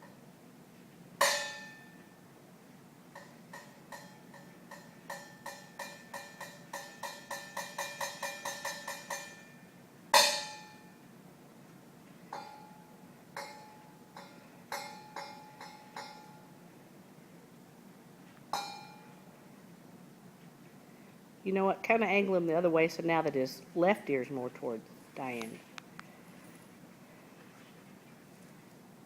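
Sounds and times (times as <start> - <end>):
metal object struck by hand: 1.2 - 2.0, 3.2 - 9.6, 10.2 - 10.9, 13.4 - 16.5, 18.6 - 19.2.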